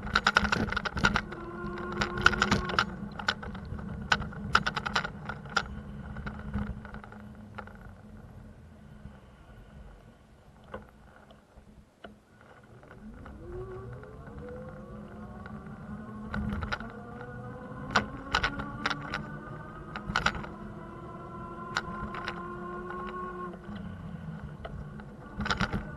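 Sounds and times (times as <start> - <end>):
sharp clicks and rattles: 0.0 - 8.3, 12.0 - 25.9
traffic hum: 0.0 - 25.9
vehicle accelerating: 1.0 - 4.3, 13.3 - 25.9.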